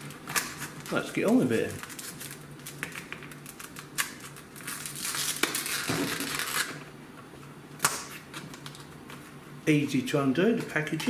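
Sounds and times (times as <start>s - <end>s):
packaging crinkling: 0.0s - 6.8s.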